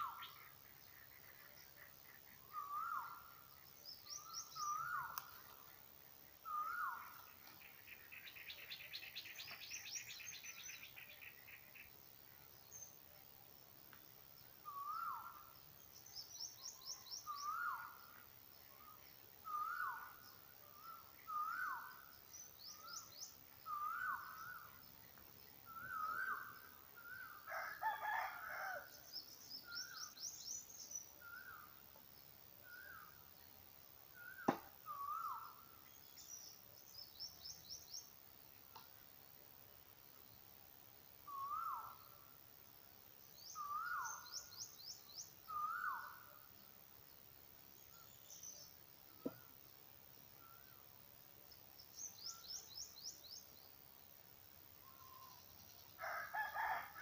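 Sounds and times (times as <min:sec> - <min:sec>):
rooster crowing: 0:27.5 - 0:28.9, 0:56.0 - 0:57.0.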